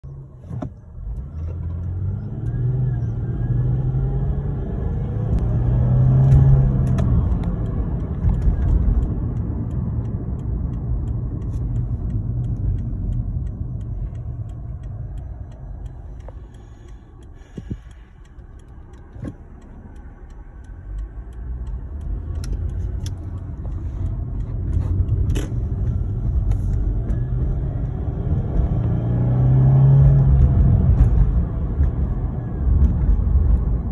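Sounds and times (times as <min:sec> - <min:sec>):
car engine accelerating: 0:00.0 - 0:33.9.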